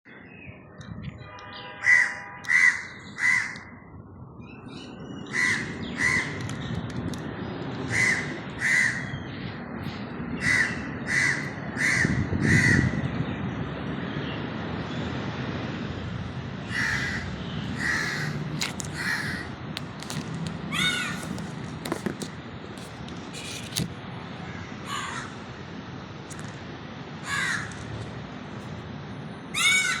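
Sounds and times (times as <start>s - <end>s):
bird calling: 20.7s - 21.4s, 29.6s - 30.0s.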